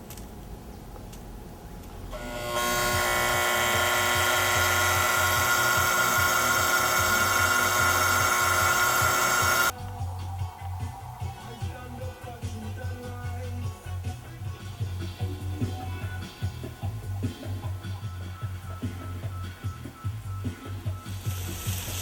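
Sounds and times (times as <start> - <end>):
small motor whining: 2.1 - 9.7.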